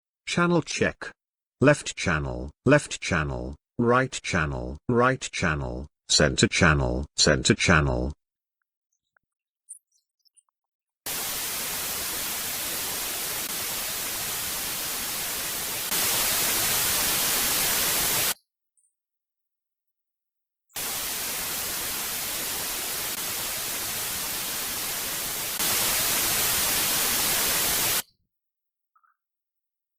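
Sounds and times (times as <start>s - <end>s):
white noise bursts: 11.1s - 18.4s, 20.8s - 28.0s.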